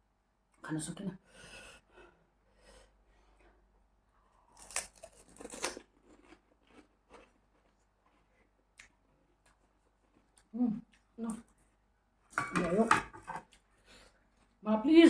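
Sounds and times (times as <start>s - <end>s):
crunching bite: 4.5s - 7.7s.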